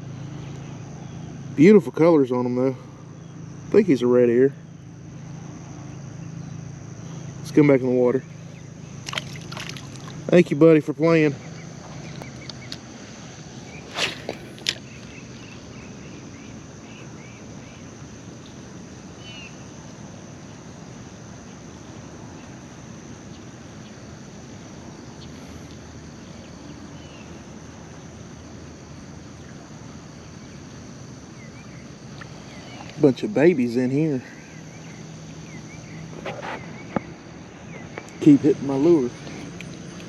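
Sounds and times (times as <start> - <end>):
insects droning: 0.0 - 40.0
faint chirps: 30.3 - 40.0.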